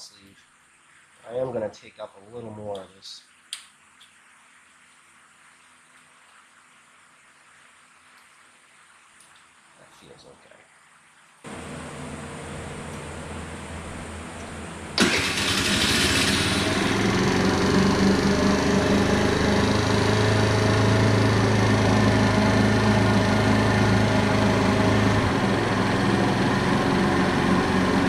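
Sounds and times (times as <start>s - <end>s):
scooter engine idling: 11.5s - 28.0s.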